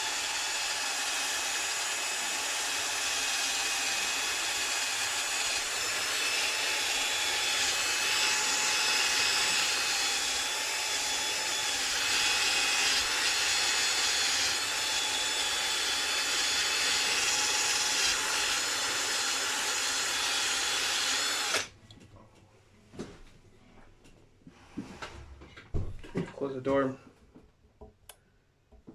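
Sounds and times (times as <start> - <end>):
electric drill polishing whine: 0.0 - 21.7.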